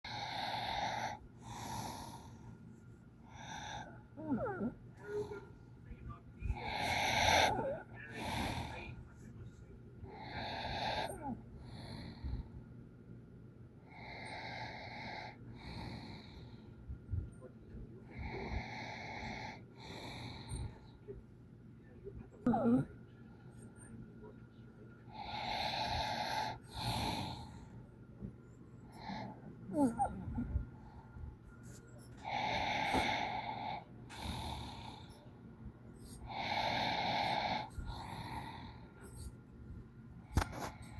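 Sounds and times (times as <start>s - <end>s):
person snoring with wheezy breaths: 0.1s - 2.5s, 3.3s - 5.4s, 6.4s - 9.0s, 10.1s - 12.6s, 13.9s - 16.7s, 18.0s - 20.9s, 25.1s - 27.7s, 28.9s - 30.7s, 31.7s - 35.3s, 36.0s - 39.4s
person snoring with squeak: 29.0s - 30.4s.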